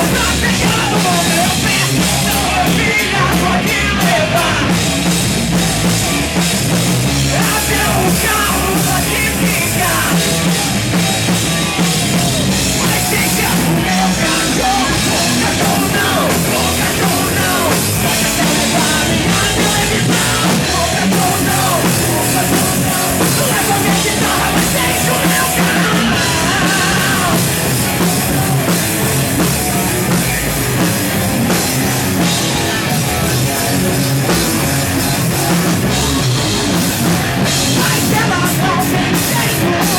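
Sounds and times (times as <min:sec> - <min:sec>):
bass: 0:00.0 - 0:39.9
distorted electric guitars: 0:00.0 - 0:39.9
pounding drum kit: 0:00.0 - 0:39.9.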